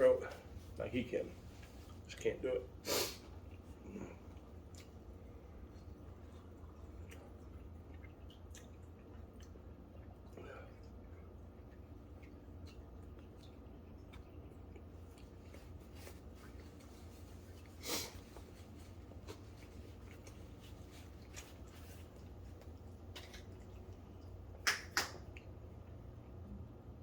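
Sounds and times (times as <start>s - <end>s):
low steady hum: 0.0s - 27.0s
finger snaps: 24.6s - 25.5s.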